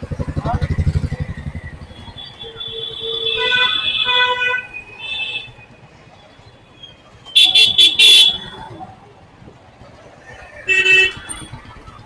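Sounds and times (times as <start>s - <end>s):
vehicle horns honking: 2.0s - 5.6s, 7.3s - 8.6s, 10.7s - 11.5s.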